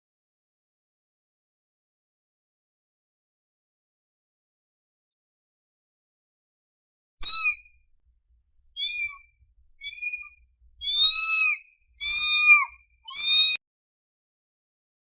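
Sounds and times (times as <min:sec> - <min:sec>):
kitten meowing: 0:07.2 - 0:07.6, 0:08.8 - 0:09.2, 0:09.8 - 0:13.6.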